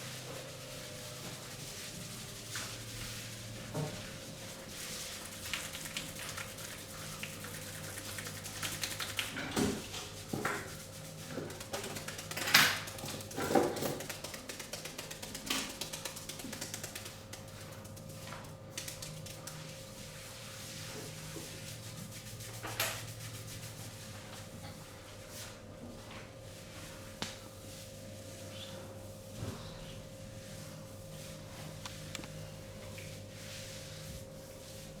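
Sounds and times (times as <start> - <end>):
hands rubbing skin and hair: 4.5 - 9.4, 10.2 - 24.1.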